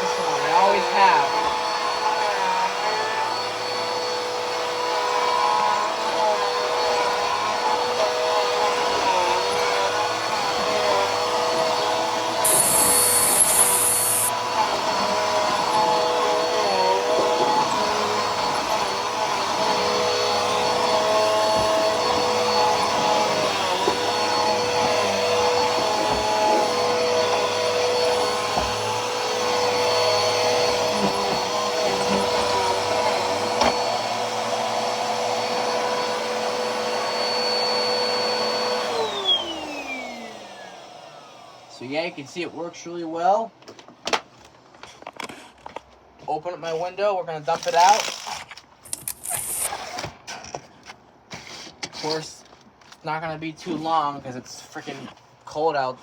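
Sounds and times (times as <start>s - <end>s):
vacuum cleaner motor whine: 0.0s - 42.2s
brief high hiss: 12.4s - 14.3s, 48.9s - 49.8s.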